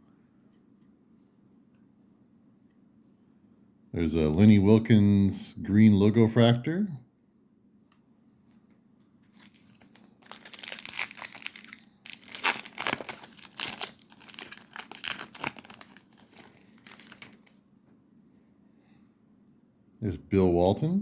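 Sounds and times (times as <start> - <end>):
foil wrapper tearing and crinkling: 9.3 - 17.6.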